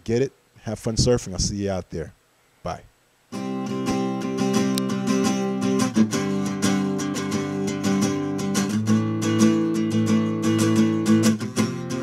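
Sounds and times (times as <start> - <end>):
strummed guitar chords: 3.3 - 12.0.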